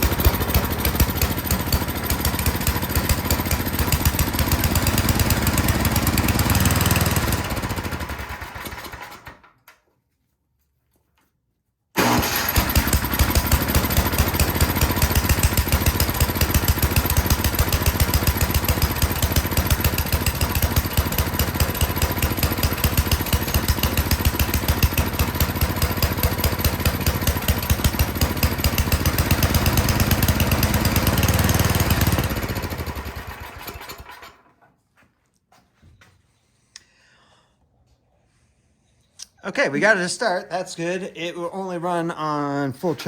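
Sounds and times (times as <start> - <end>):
snowblower engine pulsing: 0.0 - 9.3, 12.0 - 34.5.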